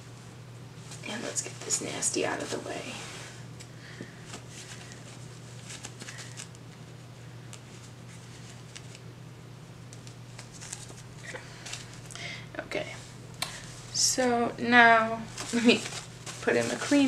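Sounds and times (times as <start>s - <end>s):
low steady hum: 0.0s - 17.0s
diaper and wipes rustling: 0.8s - 3.3s, 4.2s - 6.6s, 14.8s - 17.0s.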